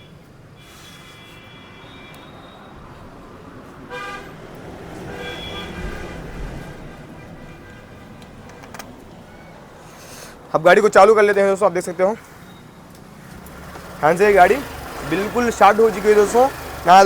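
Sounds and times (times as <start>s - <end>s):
traffic noise: 0.0s - 17.0s
vehicle horn toots: 0.6s - 2.8s, 3.9s - 4.4s, 5.0s - 8.7s.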